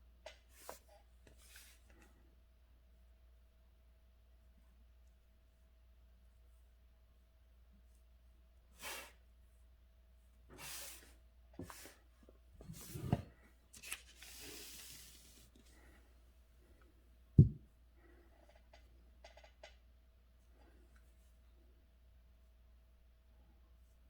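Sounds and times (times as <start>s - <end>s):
paper rustling and scraping: 12.6s - 15.7s
loud thump: 17.4s - 17.6s.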